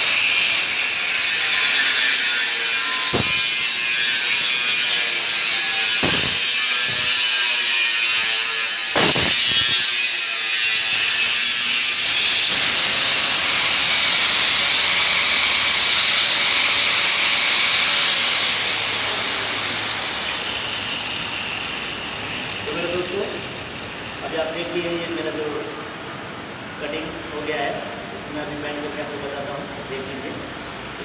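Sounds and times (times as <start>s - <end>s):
grinding saw cutting metal: 0.0s - 23.6s
sharp knocks: 3.1s - 3.6s, 6.0s - 7.1s, 9.0s - 9.7s.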